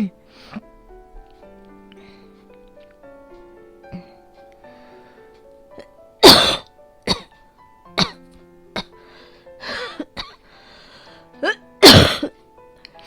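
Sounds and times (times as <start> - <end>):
soft background music: 0.0 - 13.0
woman coughing hard: 6.2 - 7.3, 8.0 - 8.2, 9.7 - 10.4, 11.4 - 12.3
rasping breath: 9.0 - 11.3.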